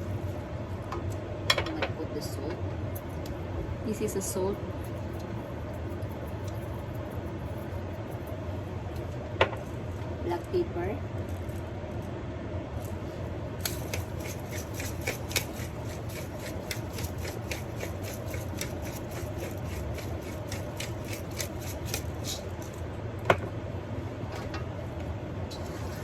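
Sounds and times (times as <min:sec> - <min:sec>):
pepper mill grinding: 0:13.6 - 0:22.8.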